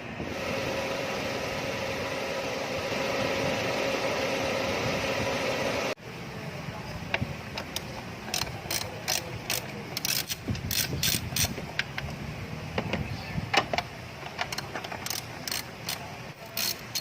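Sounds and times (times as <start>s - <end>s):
ratchet wrench clicking: 7.6s - 12.1s, 14.2s - 17.0s.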